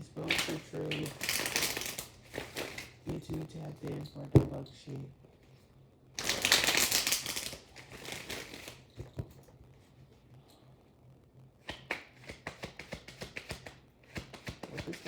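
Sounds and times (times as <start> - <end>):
cards shuffling rustle: 0.0 - 3.4, 6.2 - 9.2, 11.7 - 15.0
cards tapping on a surface: 11.7 - 15.0.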